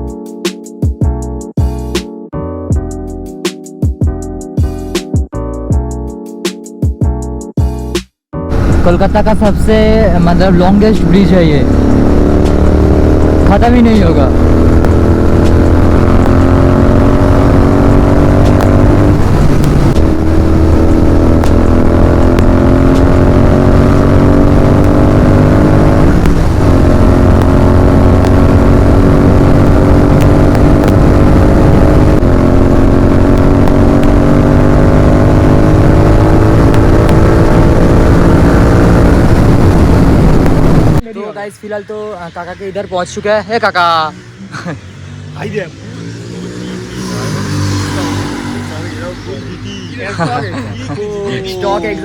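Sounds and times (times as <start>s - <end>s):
motorcycle engine through gears: 8.5s - 41.0s, 45.8s - 49.9s.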